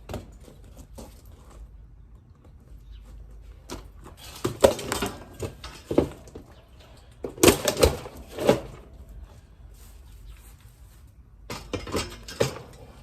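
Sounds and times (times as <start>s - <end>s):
knocks and clatter of unit being moved: 3.6s - 9.0s, 11.4s - 13.0s.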